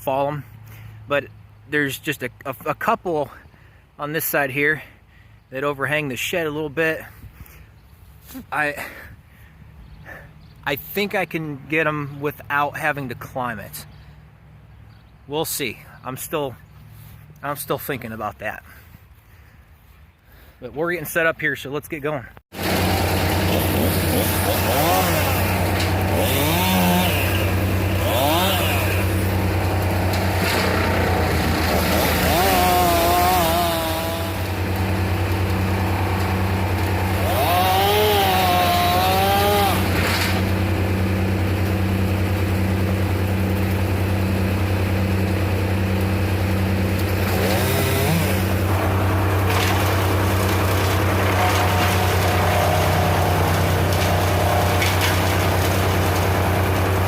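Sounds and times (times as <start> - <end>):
chainsaw revving: 22.5 - 57.0.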